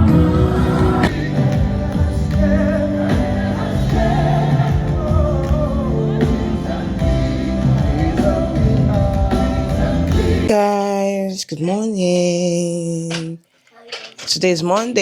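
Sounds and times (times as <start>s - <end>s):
sustained instrumental chords: 0.0s - 10.5s
gospel singing: 0.0s - 11.3s.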